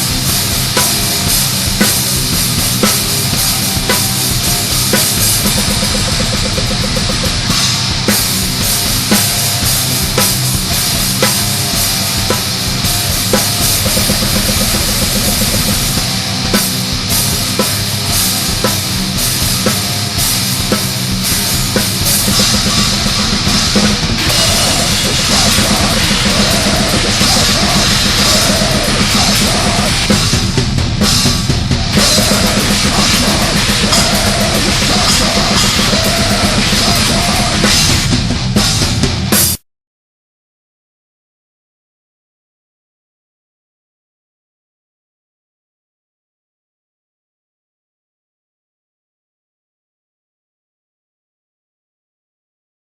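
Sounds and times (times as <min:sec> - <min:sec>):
distorted guitar riff: 0:00.0 - 0:39.6
fast metal drumming: 0:00.0 - 0:39.6.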